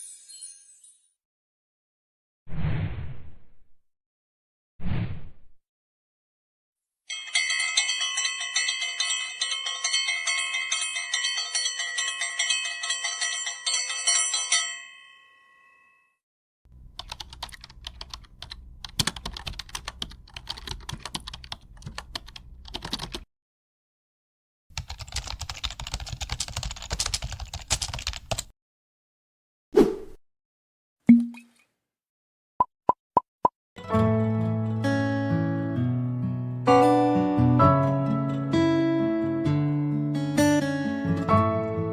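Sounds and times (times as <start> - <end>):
bell ringing: 7.1 - 16.1
keyboard typing: 16.7 - 23.2, 24.8 - 28.5.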